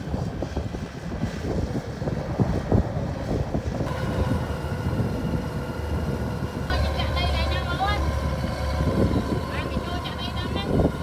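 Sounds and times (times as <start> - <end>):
combine harvester rumble: 0.0 - 11.0
wind buffeting microphone: 0.0 - 11.0
engine hum with even tones: 0.8 - 11.0.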